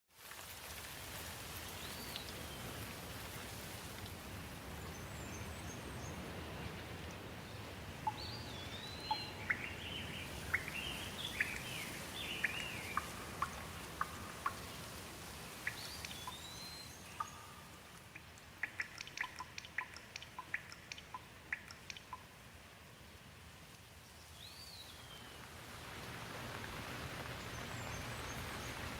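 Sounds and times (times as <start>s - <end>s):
steady rain falling: 0.1s - 28.9s
raindrops ticking: 0.2s - 22.6s
birds chirping: 4.7s - 22.3s.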